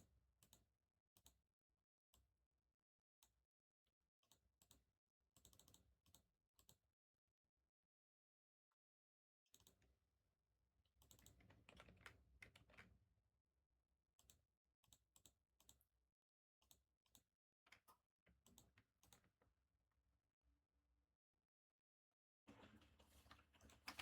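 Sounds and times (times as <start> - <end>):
faint keyboard typing: 11.0 - 13.0.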